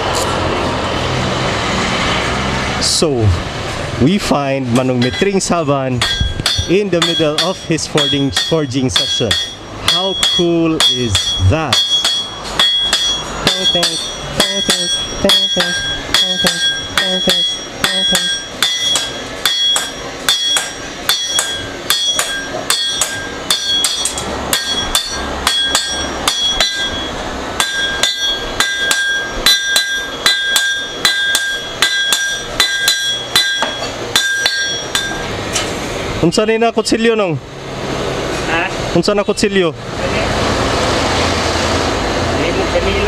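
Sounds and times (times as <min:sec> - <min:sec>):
hammer striking anvil: 0:04.7 - 0:35.7.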